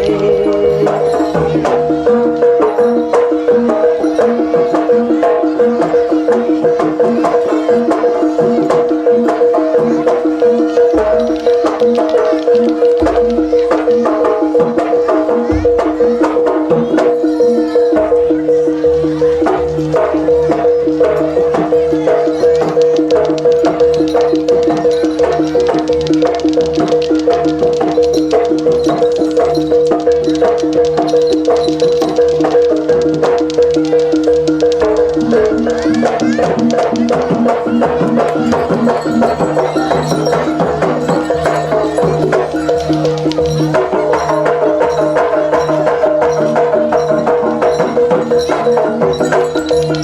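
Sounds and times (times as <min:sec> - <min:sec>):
repeated short tuned notes: 0:00.0 - 0:50.0
sharp percussive clicks: 0:10.2 - 0:14.2, 0:20.8 - 0:50.0
held high tone: 0:35.1 - 0:50.0.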